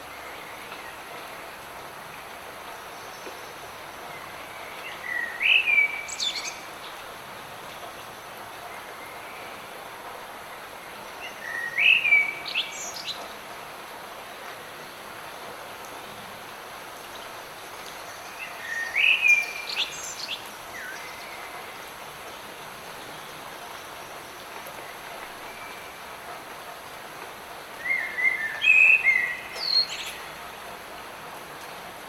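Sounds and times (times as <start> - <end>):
light rain hiss: 0.0 - 32.0
songbird singing: 2.7 - 8.1, 10.6 - 13.4, 16.9 - 26.1, 27.8 - 30.6.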